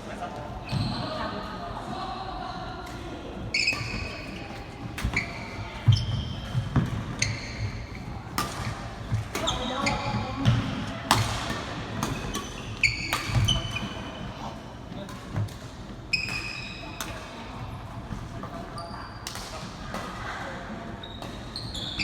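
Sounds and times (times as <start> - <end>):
sneaker squeaks on floor: 0.6 - 1.4, 3.5 - 8.8, 9.4 - 10.6, 12.2 - 14.2, 16.1 - 17.0, 18.7 - 19.3, 20.9 - 22.0.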